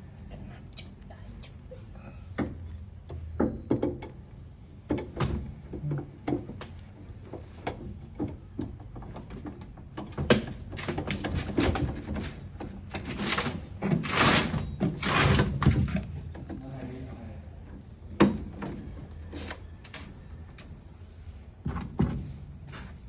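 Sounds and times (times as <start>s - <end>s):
low steady hum: 0.0s - 10.9s
irregular clicks and knocks: 2.4s - 16.6s.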